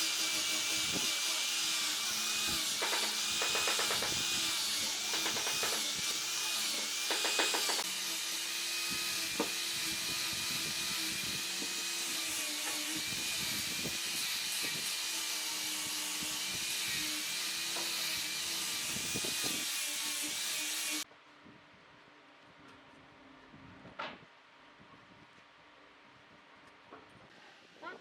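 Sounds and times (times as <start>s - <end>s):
power tool motor whine: 0.0s - 21.0s.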